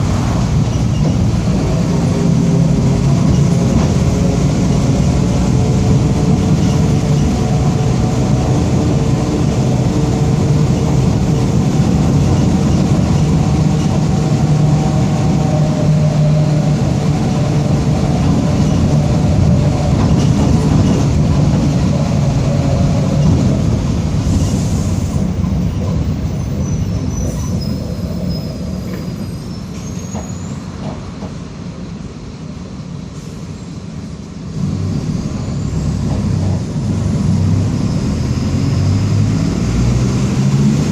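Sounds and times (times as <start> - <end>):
bus engine droning: 0.0 - 40.9
faint high squeals: 26.3 - 30.7.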